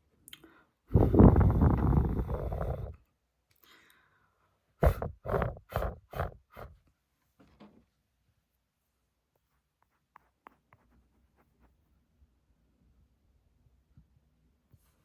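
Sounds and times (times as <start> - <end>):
fingers rubbing and scratching: 0.9 - 3.0, 4.8 - 6.8
short finger strokes: 0.9 - 3.0, 4.8 - 6.8.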